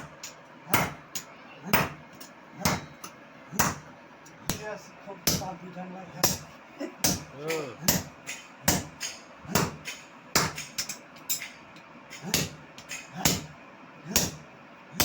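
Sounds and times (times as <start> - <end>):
hammer striking metal on anvil: 0.0 - 3.8, 5.2 - 5.6, 6.2 - 13.5, 14.2 - 14.4.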